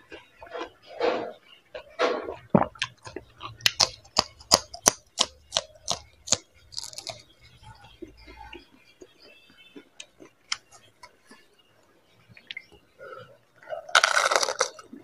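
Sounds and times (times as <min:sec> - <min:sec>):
wet chewing clicks: 0:01.7 - 0:11.5, 0:13.7 - 0:15.0
crunching crisp shells: 0:02.8 - 0:07.3, 0:13.9 - 0:14.9.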